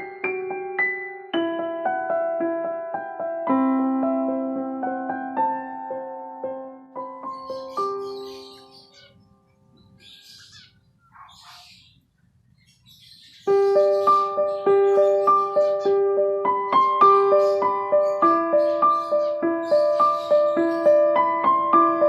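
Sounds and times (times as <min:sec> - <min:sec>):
gentle piano melody: 0:00.0 - 0:10.7, 0:13.2 - 0:22.0
birds chirping faintly: 0:05.4 - 0:22.0.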